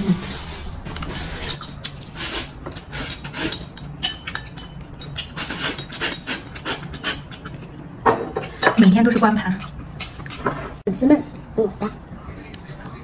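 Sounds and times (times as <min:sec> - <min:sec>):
chopsticks scraping bowls: 0:00.0 - 0:07.8, 0:08.4 - 0:10.8.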